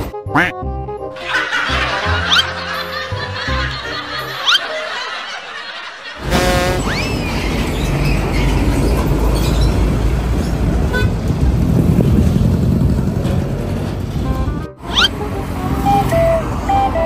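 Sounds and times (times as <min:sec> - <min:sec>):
vehicle horn toot: 0:06.2 - 0:07.1
diesel engine rumble: 0:06.2 - 0:17.0.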